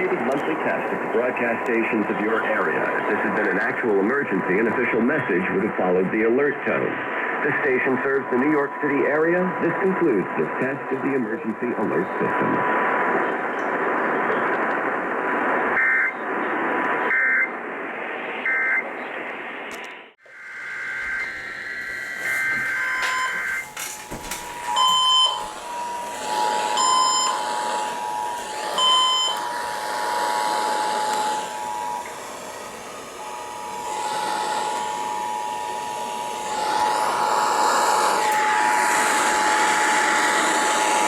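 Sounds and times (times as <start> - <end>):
radio static hiss: 0.0 - 41.0
two-tone alert signal: 22.2 - 25.5, 26.6 - 27.5.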